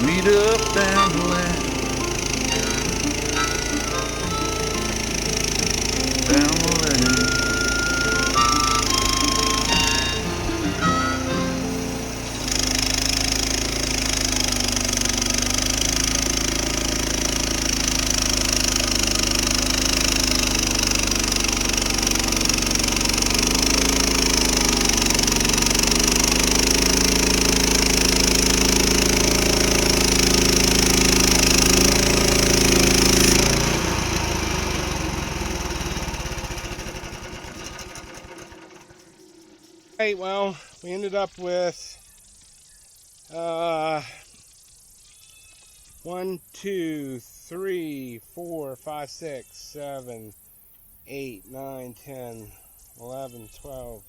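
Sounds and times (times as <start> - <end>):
bandsaw mill sawing lumber: 0.0 - 40.4.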